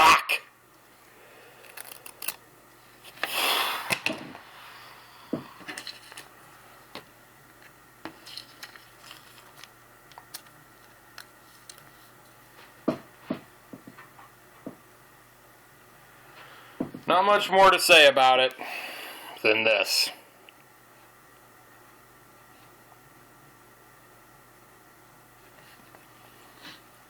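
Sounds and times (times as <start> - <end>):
cards and packaging handled: 1.6 - 2.4, 7.6 - 12.2.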